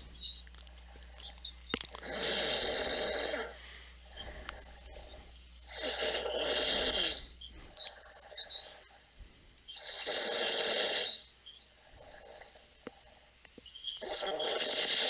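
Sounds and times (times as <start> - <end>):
person breathing: 0.7 - 9.6
person snoring: 1.9 - 9.0, 9.7 - 13.0, 14.0 - 15.0.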